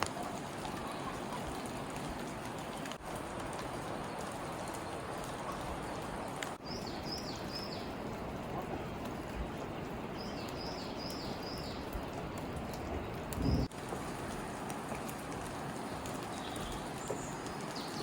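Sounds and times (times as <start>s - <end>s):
bird chirping: 6.6s - 7.9s, 10.2s - 12.0s.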